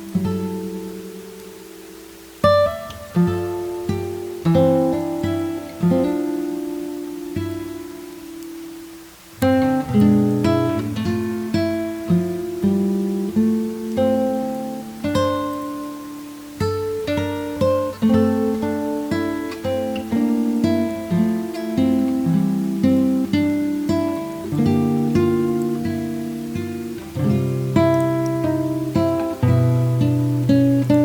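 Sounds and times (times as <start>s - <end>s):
plucked guitar melody: 0.0s - 31.0s.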